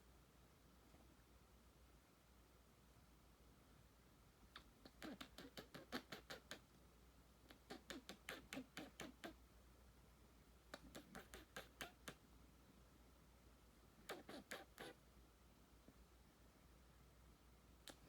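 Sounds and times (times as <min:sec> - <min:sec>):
chinchilla chirping calls: 0:04.6 - 0:06.7, 0:07.5 - 0:09.4, 0:10.7 - 0:12.2, 0:14.0 - 0:15.0.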